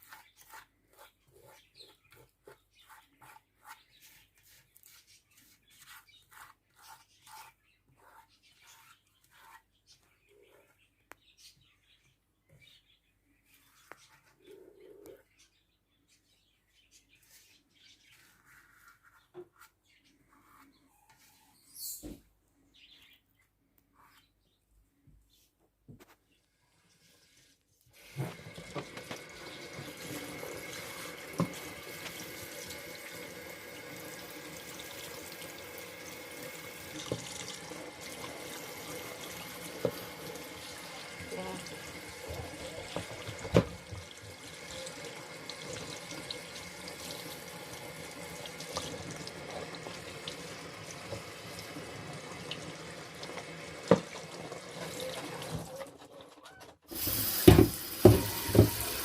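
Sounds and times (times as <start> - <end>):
wet grinder swishing batter: 0.0 - 9.6.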